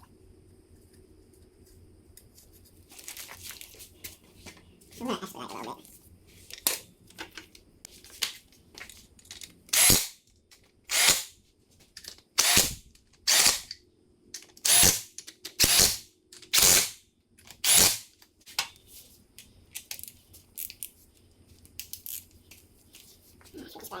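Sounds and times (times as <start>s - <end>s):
power tool running bolts: 9.7s - 10.2s, 10.9s - 11.3s, 12.4s - 13.7s, 14.6s - 18.1s.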